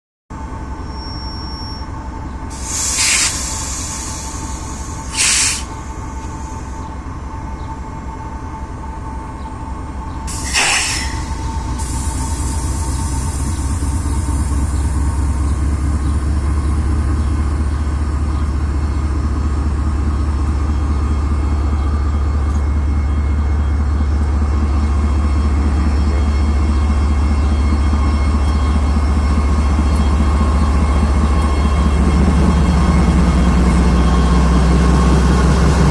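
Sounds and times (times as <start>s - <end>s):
locomotive diesel engine drone: 0.3s - 35.9s
air hiss bursts: 2.5s - 6.7s, 10.3s - 13.4s.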